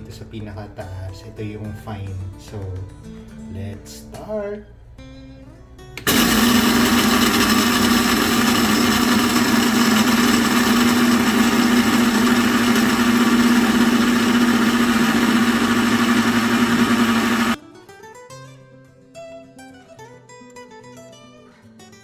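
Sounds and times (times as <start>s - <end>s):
coffee grinder motor hum: 6.0s - 17.6s.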